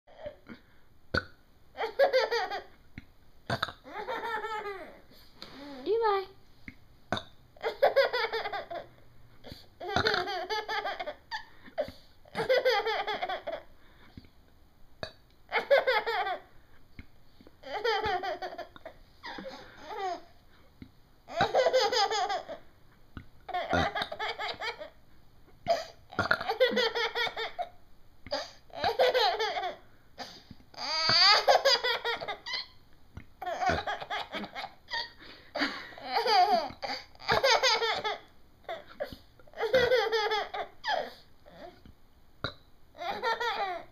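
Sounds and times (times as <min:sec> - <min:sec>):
baby laughing: 0:01.8 - 0:02.7, 0:03.8 - 0:05.1, 0:07.6 - 0:08.9, 0:09.5 - 0:13.7, 0:15.5 - 0:16.5, 0:17.6 - 0:20.3, 0:21.3 - 0:22.6, 0:23.5 - 0:25.0, 0:25.7 - 0:32.8, 0:33.4 - 0:41.8, 0:43.0 - 0:43.9.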